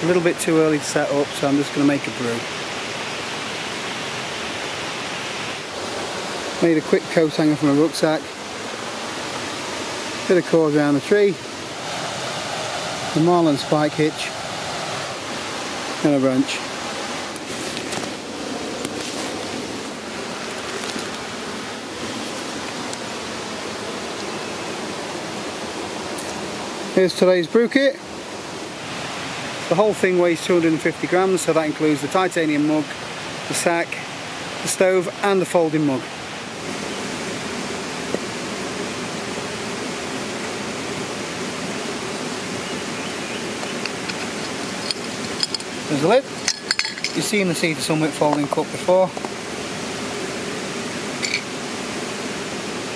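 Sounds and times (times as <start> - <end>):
waterfall roaring: 0.0 - 52.9.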